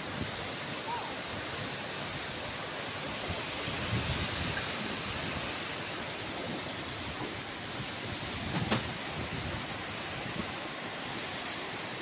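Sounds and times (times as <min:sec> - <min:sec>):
heavy rain: 0:00.0 - 0:12.0
wind buffeting microphone: 0:03.2 - 0:10.7.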